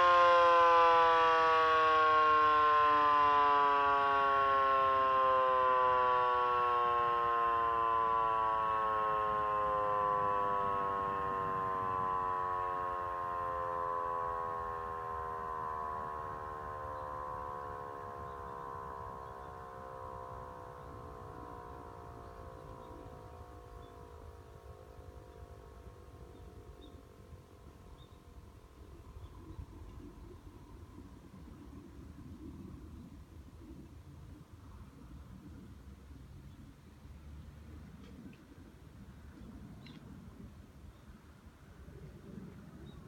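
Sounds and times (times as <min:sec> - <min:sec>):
mechanical siren winding down: 0:00.0 - 0:28.7.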